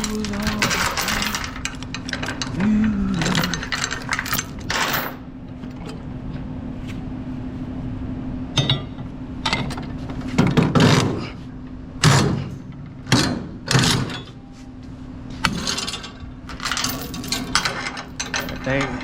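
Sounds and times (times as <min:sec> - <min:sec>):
metal chains clanking and rattling: 0:00.0 - 0:06.1, 0:12.0 - 0:14.4, 0:15.4 - 0:19.0
steady low hum: 0:00.0 - 0:19.0.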